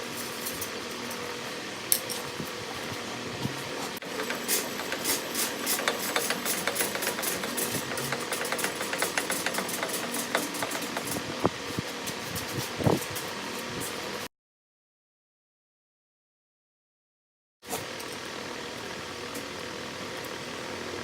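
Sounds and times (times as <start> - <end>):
lathe humming: 4.0 - 11.4.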